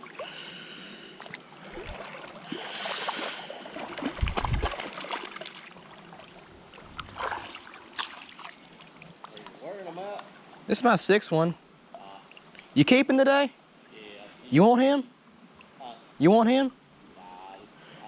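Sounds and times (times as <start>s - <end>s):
creek water running and splashing: 0.0s - 10.5s.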